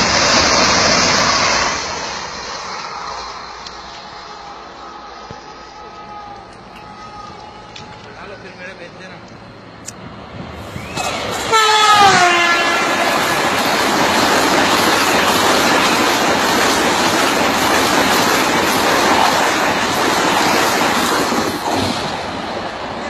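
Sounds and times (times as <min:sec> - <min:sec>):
train wheels rushing and rattling: 0:00.0 - 0:23.0
train horn: 0:11.5 - 0:13.3.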